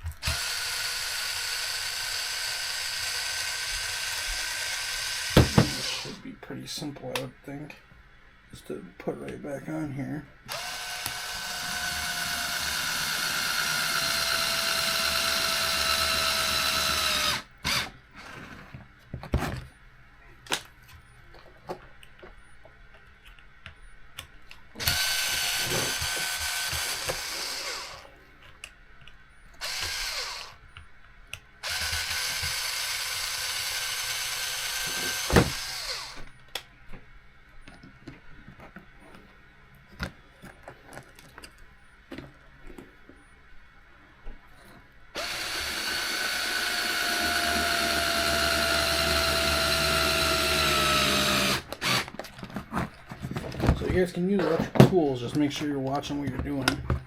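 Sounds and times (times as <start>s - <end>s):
electric driver motor whine: 0.2s - 6.2s, 10.5s - 17.9s, 24.8s - 28.0s, 29.6s - 30.6s, 31.6s - 36.3s, 45.2s - 52.1s.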